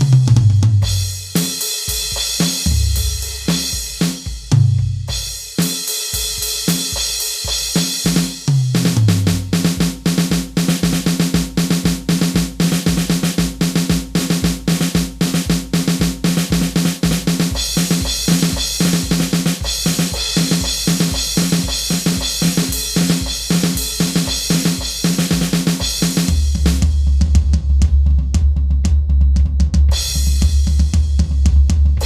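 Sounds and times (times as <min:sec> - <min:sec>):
rock drum beat: 0:00.0 - 0:32.0.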